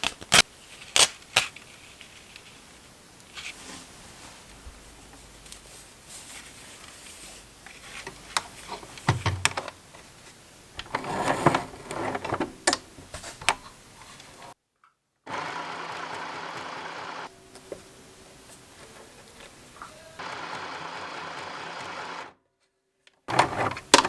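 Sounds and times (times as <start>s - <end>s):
paper rustling and crinkling: 0.0s - 14.6s, 23.3s - 24.0s.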